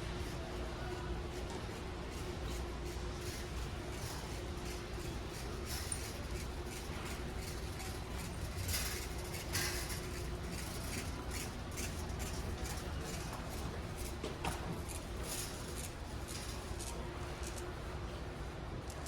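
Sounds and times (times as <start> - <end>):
light clicks and clinks: 3.2 - 13.4.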